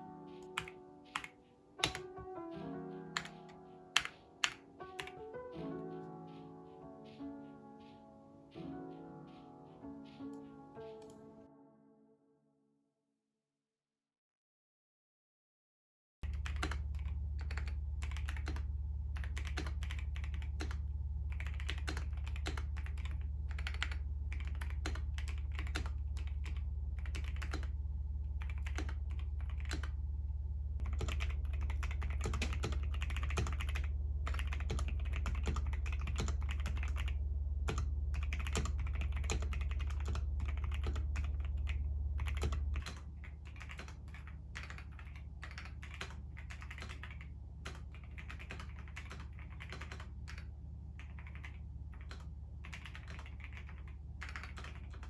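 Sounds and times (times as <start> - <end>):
mechanical keyboard typing: 0.0 - 5.3, 16.3 - 18.6, 19.2 - 27.7, 28.4 - 29.9, 30.8 - 55.0
low steady hum: 16.2 - 55.0.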